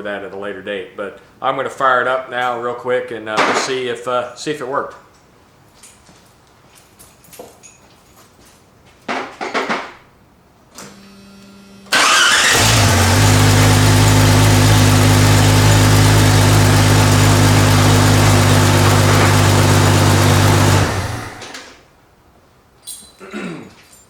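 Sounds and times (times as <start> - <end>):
starter cranking engine: 11.9 - 21.8
car engine running: 12.0 - 21.6.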